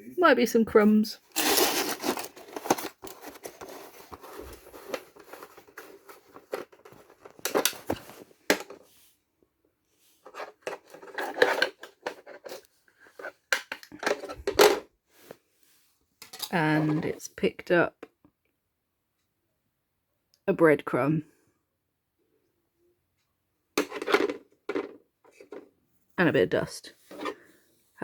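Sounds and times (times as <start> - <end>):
plastic compartment clicks and scrapes: 1.3 - 8.8, 10.2 - 14.8, 23.8 - 25.7.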